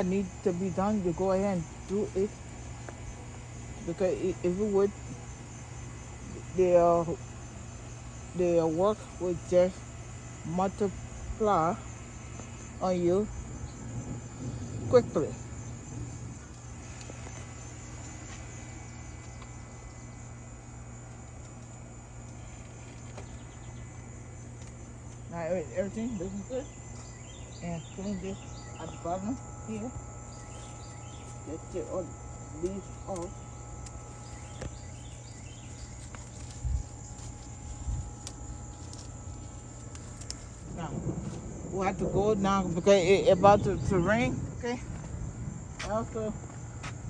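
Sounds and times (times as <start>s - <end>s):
high-pitched insect drone: 0.0s - 47.0s
low hum: 0.0s - 47.0s
low rumble: 10.9s - 47.0s.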